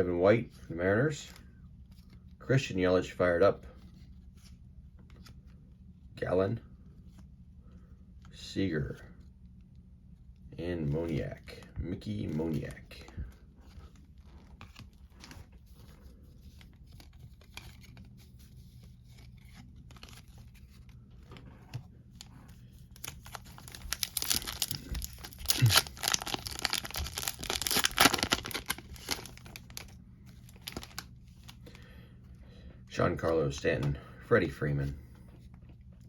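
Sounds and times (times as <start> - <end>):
foil wrapper tearing and crinkling: 22.9 - 29.9, 30.5 - 31.1.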